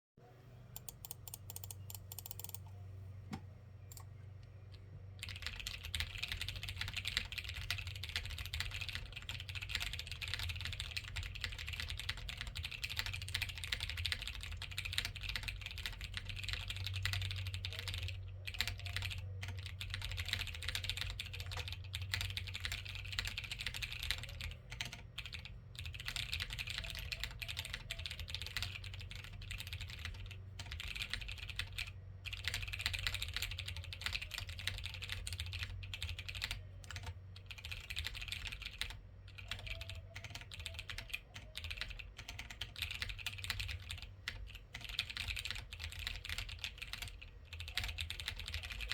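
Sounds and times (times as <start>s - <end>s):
low steady hum: 0.2s - 48.9s
mechanical keyboard key clacks: 0.8s - 2.6s.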